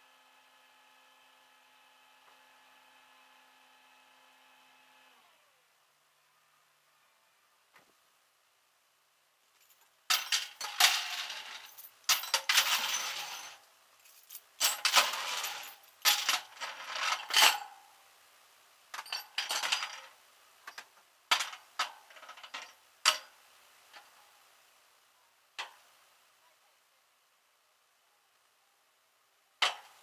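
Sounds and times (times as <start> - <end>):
loose metal clinking and rattling: 9.5 - 17.8, 18.9 - 24.2, 29.6 - 30.0.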